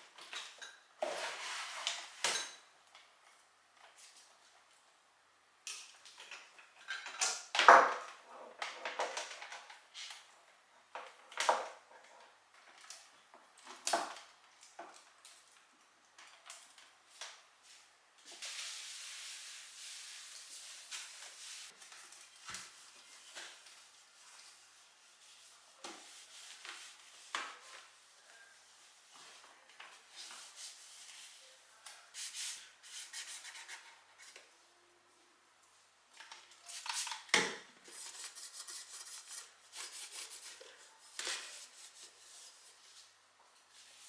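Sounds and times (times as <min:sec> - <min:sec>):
steady hiss: 0:17.6 - 0:33.4.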